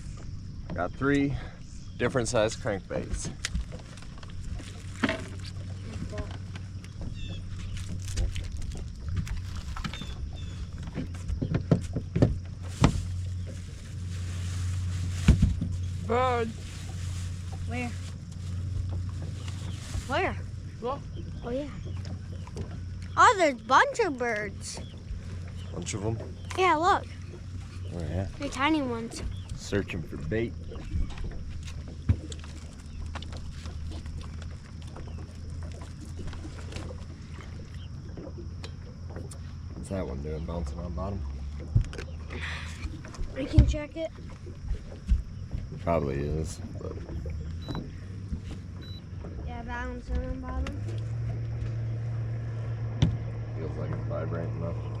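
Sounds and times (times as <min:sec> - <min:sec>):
boat motor running: 0:00.0 - 0:55.0
knocks against boat: 0:09.1 - 0:13.1, 0:15.2 - 0:15.8, 0:43.1 - 0:45.9, 0:52.9 - 0:53.3.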